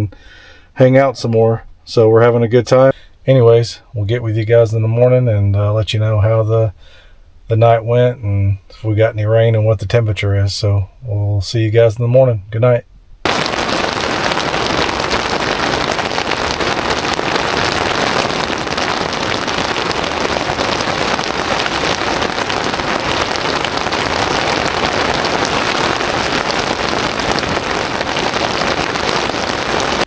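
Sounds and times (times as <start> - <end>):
heavy rain: 13.3 - 30.0.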